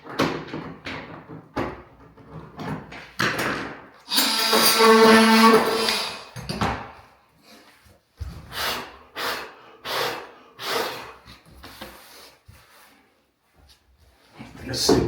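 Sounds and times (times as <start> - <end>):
short scraping strokes: 4.1 - 6.4
creaking squeal: 4.1 - 6.6.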